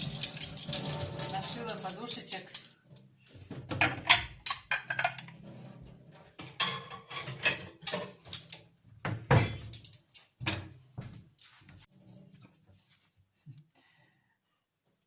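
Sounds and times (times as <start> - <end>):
dishes and cutlery clattering: 0.0 - 10.8.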